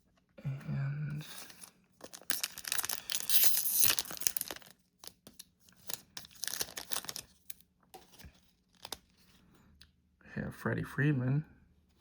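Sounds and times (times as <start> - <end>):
foil wrapper tearing and crinkling: 2.0 - 7.6.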